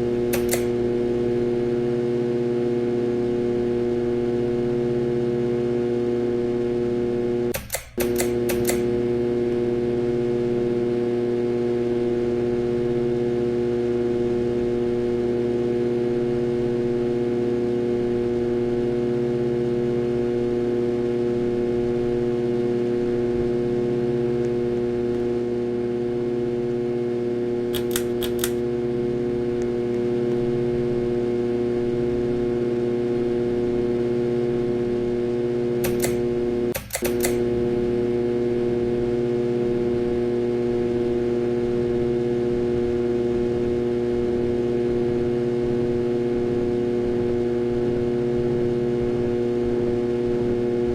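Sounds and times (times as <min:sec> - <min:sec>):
ceiling fan motor humming: 0:00.0 - 0:50.9
short clicks: 0:00.3 - 0:00.8, 0:07.5 - 0:08.9, 0:27.7 - 0:28.6, 0:35.8 - 0:37.4.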